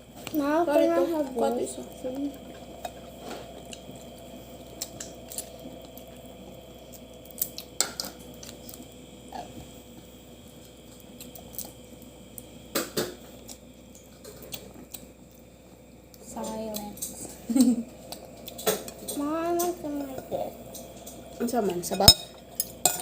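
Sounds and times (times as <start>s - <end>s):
dishes and utensils clinking: 21.8s - 23.0s.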